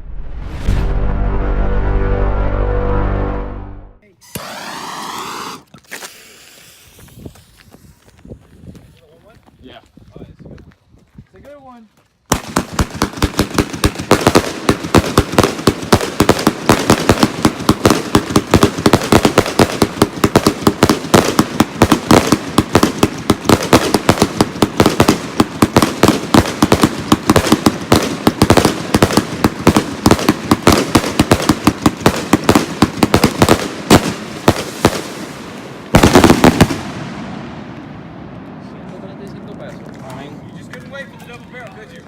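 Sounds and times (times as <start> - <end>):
fireworks firing rapid bangs: 4.2 - 5.6, 12.3 - 37.5.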